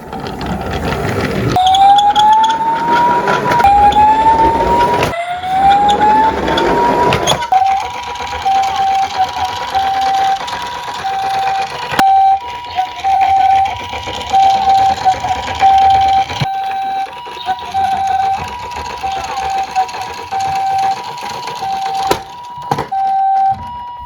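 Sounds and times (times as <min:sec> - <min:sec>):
toy two-tone siren: 0:01.5 - 0:24.0.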